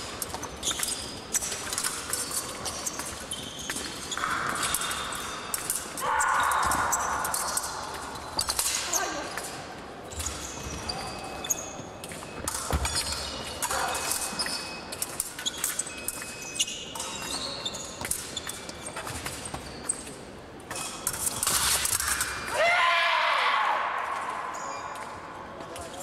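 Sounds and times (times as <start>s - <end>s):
fencing blades clashing: 0.0s - 22.8s.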